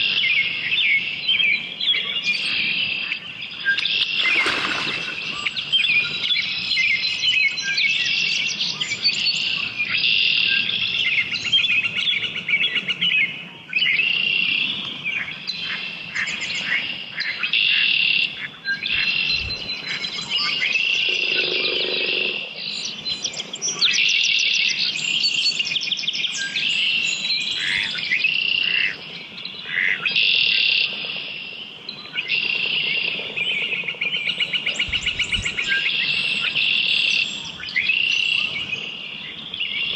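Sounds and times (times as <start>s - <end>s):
songbirds singing: 0.0s - 39.9s
low-pitched bird call: 13.9s - 22.9s.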